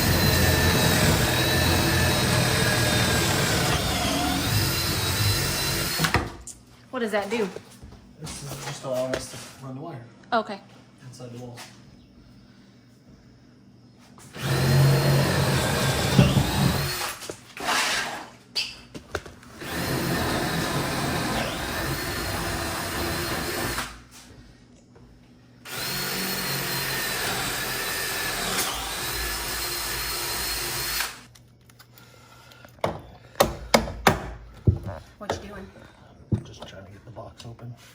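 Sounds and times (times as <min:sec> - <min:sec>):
power drill whining: 0:00.0 - 0:06.4, 0:14.3 - 0:18.3, 0:19.5 - 0:24.0, 0:25.7 - 0:31.3.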